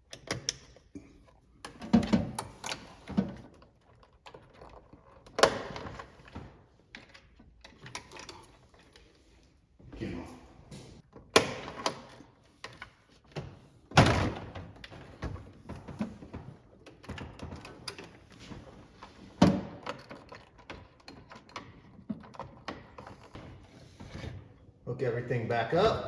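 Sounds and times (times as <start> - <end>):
small clicks and rattles: 0.0 - 9.2, 14.8 - 23.4.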